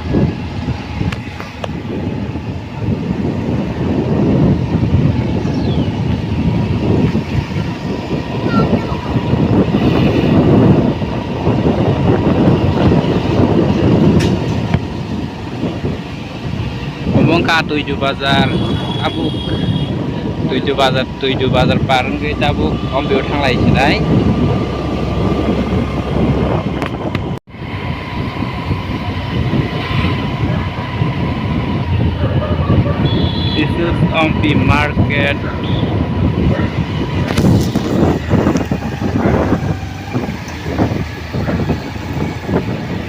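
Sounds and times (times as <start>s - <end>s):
vehicle rumble: 0.0s - 43.0s
wind buffeting microphone: 0.0s - 43.0s.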